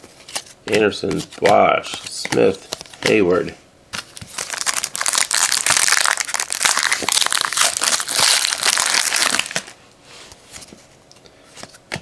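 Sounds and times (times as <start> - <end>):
plastic wrapper crinkling: 4.0 - 9.8.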